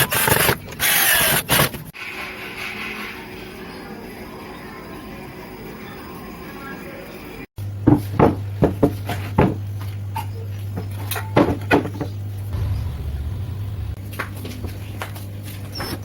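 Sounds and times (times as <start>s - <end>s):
low hum: 12.5s - 14.9s.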